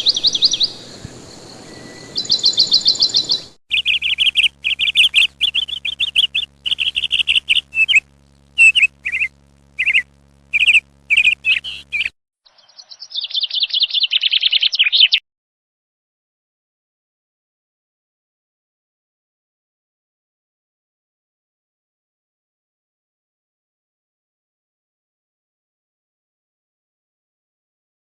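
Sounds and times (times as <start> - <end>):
bird trilling: 0.0 - 15.2
bird sharp repeated calls: 2.2 - 15.2.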